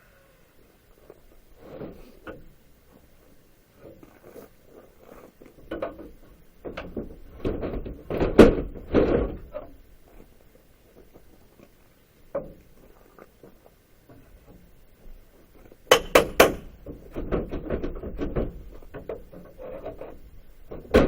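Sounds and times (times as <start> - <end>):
wood knocking and creaking: 5.6 - 9.7, 15.9 - 21.0.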